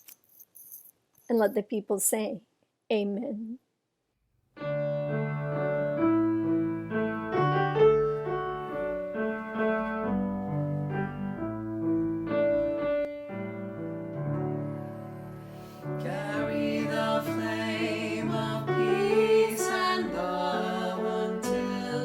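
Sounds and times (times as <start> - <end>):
piano playing slow chords: 4.6 - 22.0.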